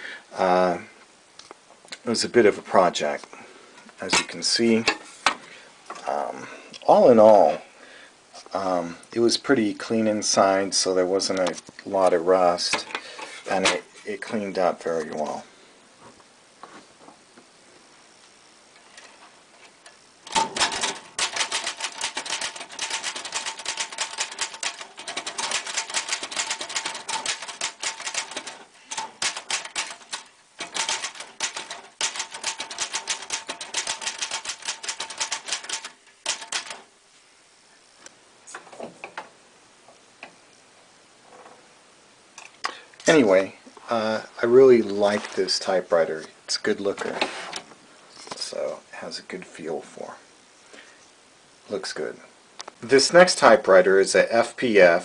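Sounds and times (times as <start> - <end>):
typewriter keystrokes: 20.3 - 36.9.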